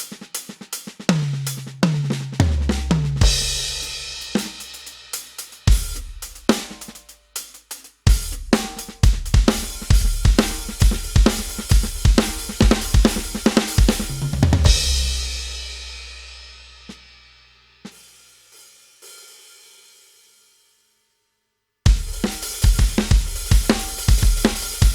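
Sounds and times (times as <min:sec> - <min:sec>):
electronic drum beat: 0:08.1 - 0:15.0, 0:21.9 - 0:24.9.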